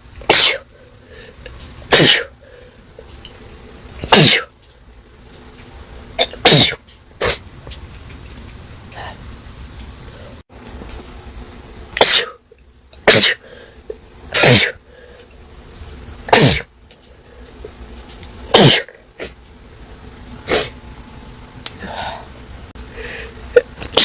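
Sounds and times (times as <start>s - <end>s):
person sneezing: 0.2s - 0.7s, 1.9s - 2.4s, 4.0s - 4.5s, 6.2s - 7.4s, 12.0s - 12.4s, 13.0s - 13.6s, 14.3s - 14.8s, 16.3s - 16.7s, 18.5s - 19.4s, 20.5s - 20.8s.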